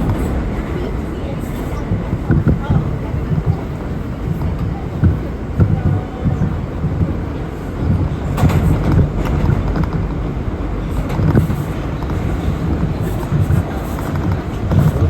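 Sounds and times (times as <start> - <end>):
subway train rumbling: 0.0 - 15.0.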